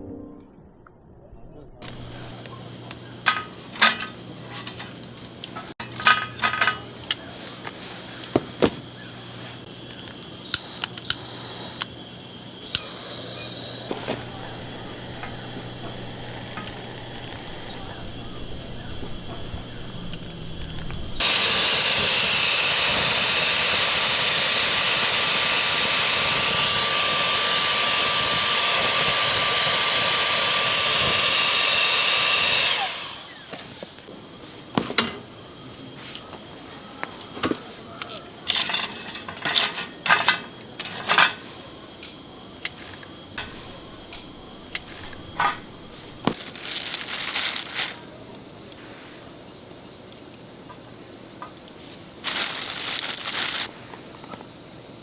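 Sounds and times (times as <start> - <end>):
electric motor whirring: 1.8 - 2.5, 12.6 - 34.0, 43.4 - 46.4.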